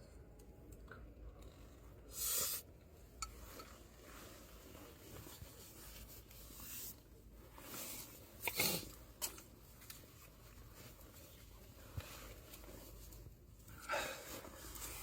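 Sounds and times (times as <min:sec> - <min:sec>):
rustling and handling noises: 0:03.2 - 0:15.0.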